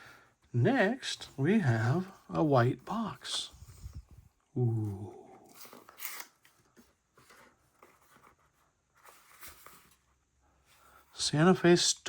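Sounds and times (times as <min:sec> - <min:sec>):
cardboard box and paper rustling: 0:05.5 - 0:10.1.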